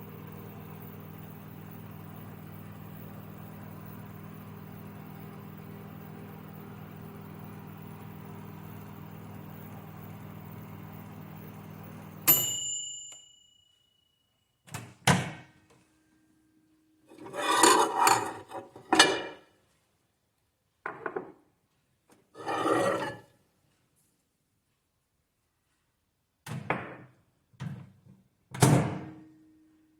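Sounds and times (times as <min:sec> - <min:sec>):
microwave oven humming: 0:00.0 - 0:13.0
microwave ding: 0:12.2 - 0:14.1.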